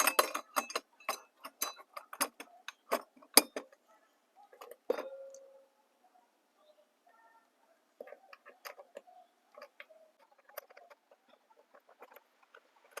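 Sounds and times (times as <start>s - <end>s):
metal clicks and clinks: 0.0s - 3.8s, 4.5s - 5.5s.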